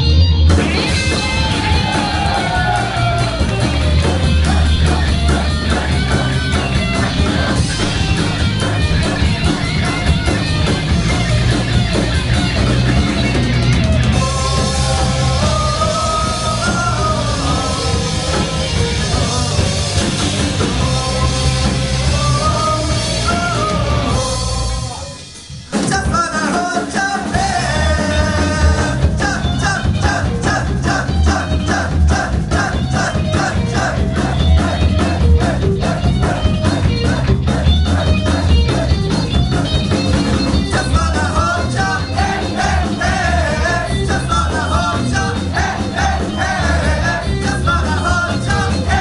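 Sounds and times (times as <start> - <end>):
rock band music: 0.0 - 49.0
person singing: 14.1 - 25.2, 40.6 - 49.0.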